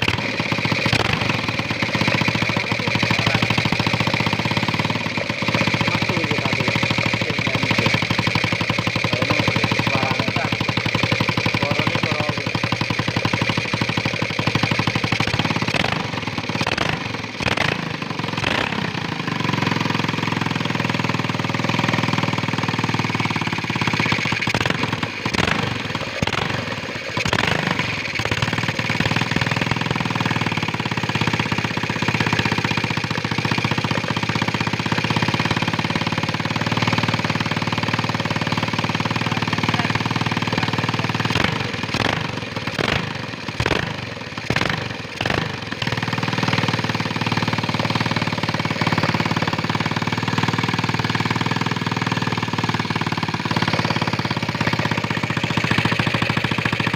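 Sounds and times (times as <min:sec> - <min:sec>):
motorcycle engine running: 0:00.0 - 0:56.9.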